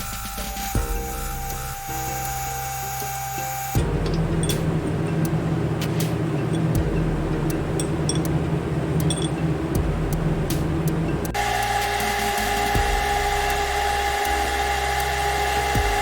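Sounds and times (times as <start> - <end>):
power tool humming: 0.0 - 16.0
sharp ticks: 3.8 - 11.4.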